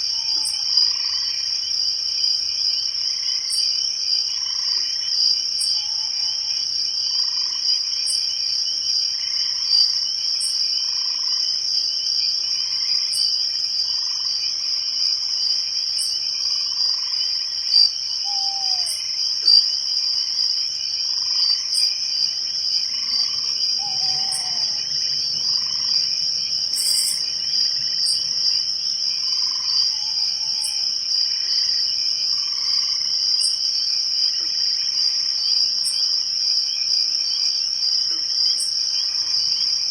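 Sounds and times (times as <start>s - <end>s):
soft frog calls: 0.0s - 1.5s, 16.0s - 33.6s
high-pitched insect trill: 0.0s - 39.9s.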